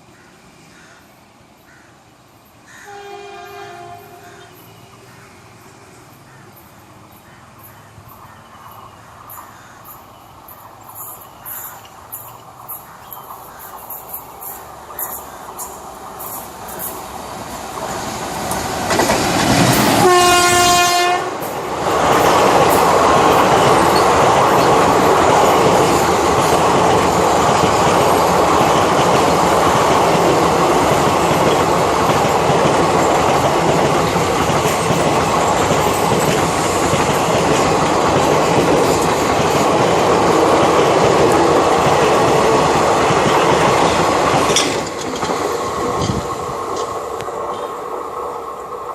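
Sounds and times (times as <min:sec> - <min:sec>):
train horn blast: 0:02.7 - 0:04.5, 0:19.9 - 0:21.5
train wheels rushing and clacking: 0:04.2 - 0:48.9.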